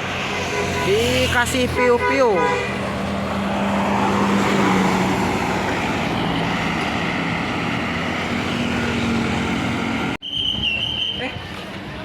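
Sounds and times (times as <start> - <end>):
bus driving past: 2.7 - 10.2.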